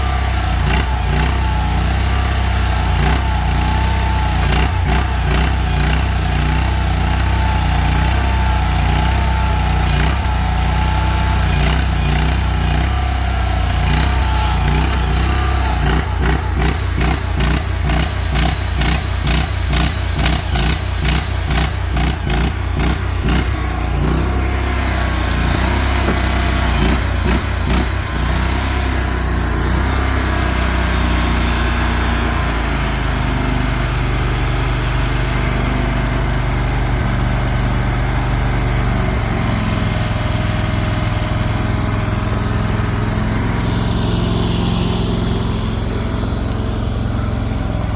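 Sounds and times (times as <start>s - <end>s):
engine running: 0.0s - 47.9s.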